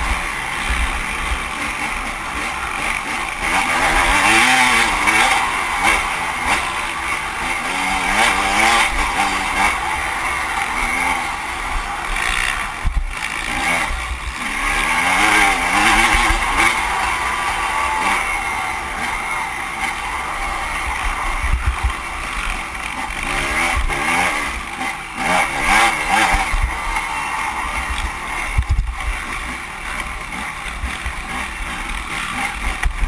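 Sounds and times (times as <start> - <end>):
motorcycle engine revving: 0.0 - 33.0.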